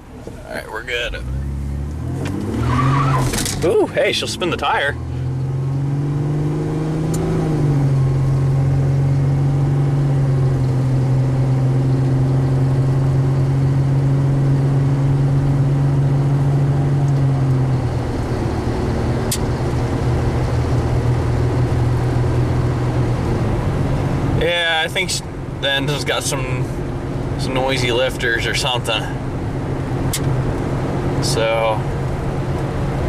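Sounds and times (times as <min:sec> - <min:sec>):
truck engine pulling on road: 0:00.0 - 0:33.0
sharp click: 0:19.3 - 0:19.5, 0:30.1 - 0:30.4.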